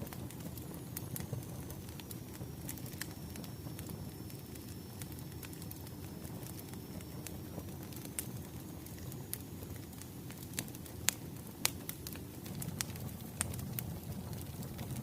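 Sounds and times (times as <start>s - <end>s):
low rumble of burning logs: 0.0s - 15.0s
wood fire crackling and popping: 0.0s - 15.0s.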